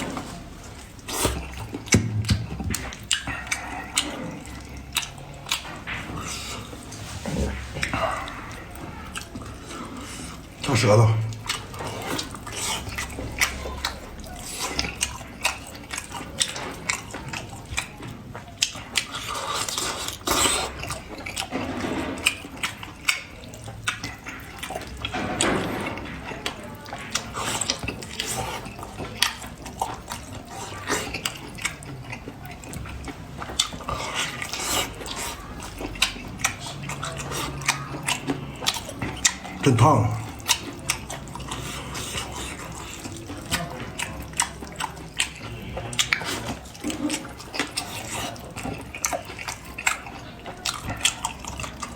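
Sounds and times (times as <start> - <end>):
wet chewing and lip-smacking: 0.0 - 51.9.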